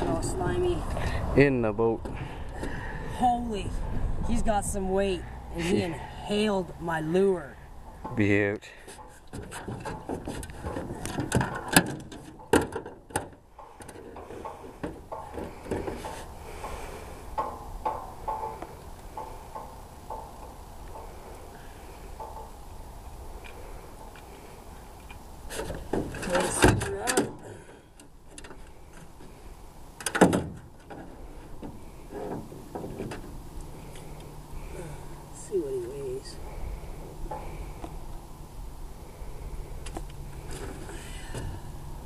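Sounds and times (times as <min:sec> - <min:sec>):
knocks and thumps in a boat: 0:08.9 - 0:16.8.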